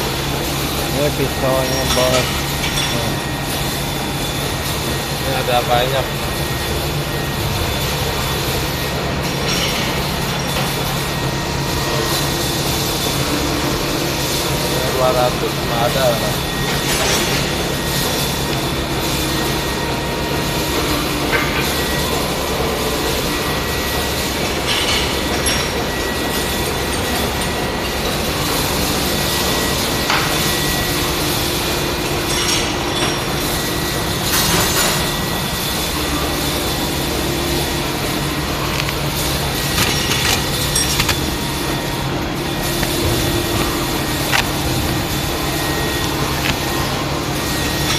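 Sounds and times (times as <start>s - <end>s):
machinery drone: 0.0s - 47.9s
short clinks and knocks: 39.6s - 41.4s.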